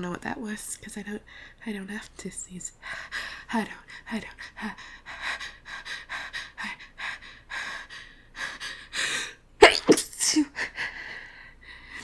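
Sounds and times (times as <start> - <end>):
woman sneezing: 9.6 - 10.6.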